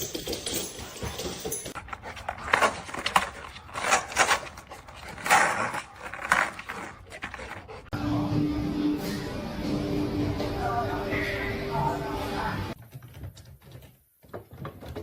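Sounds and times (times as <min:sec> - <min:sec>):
dog panting: 0:00.7 - 0:07.9.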